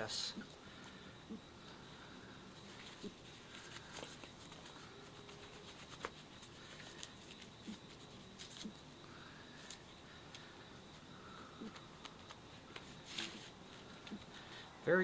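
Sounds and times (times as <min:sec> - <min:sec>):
gloves rubbing and clicking: 0:02.6 - 0:08.8.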